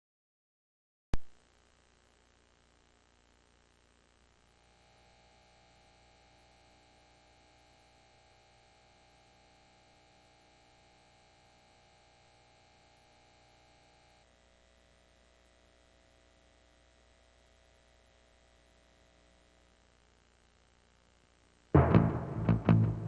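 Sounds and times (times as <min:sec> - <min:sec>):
faint electrical hum: 0:01.2 - 0:22.3.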